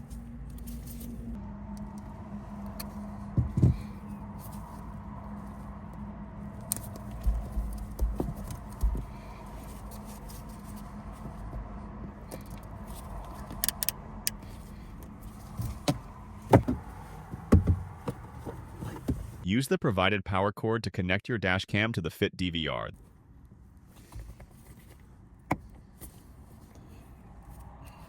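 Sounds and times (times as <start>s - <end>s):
low hum in car: 0.0s - 19.5s, 22.8s - 28.0s
plastic clicks: 13.5s - 14.0s.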